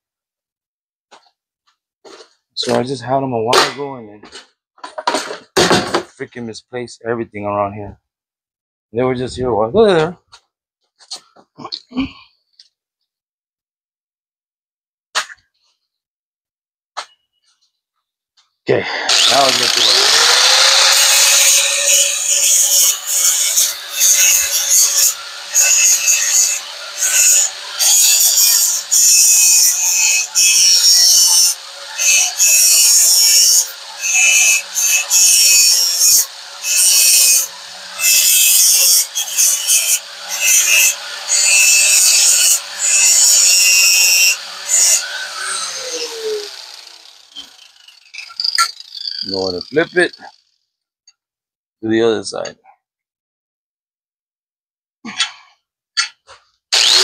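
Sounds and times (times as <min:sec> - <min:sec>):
loud rasping cutting bursts: 0:18.9 - 0:50.6, 0:56.7 - 0:57.0
power tool whining: 0:19.0 - 0:50.6, 0:56.7 - 0:57.0.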